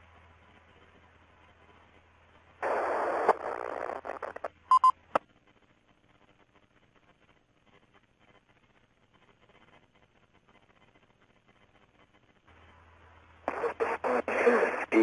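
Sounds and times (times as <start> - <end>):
radio hiss: 0.0 - 15.0
radio hum: 0.0 - 15.0
loud burst of radio noise: 2.6 - 4.4, 13.4 - 15.0
short radio beeps: 4.7 - 5.0.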